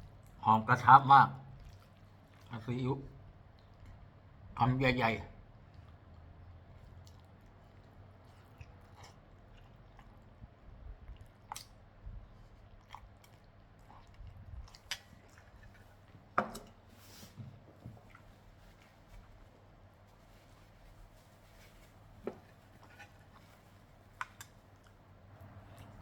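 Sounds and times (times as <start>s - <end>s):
person chewing noodles: 1.5s - 4.5s, 5.4s - 16.9s, 22.7s - 26.0s
wet mouth clicks and smacks: 11.1s - 11.8s, 12.8s - 15.2s.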